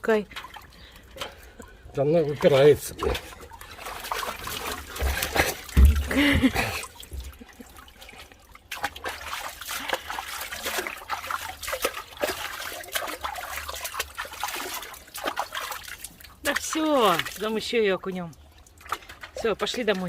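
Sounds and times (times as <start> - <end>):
water dripping: 0.0 - 20.0
water splashing and trickling: 0.0 - 20.0.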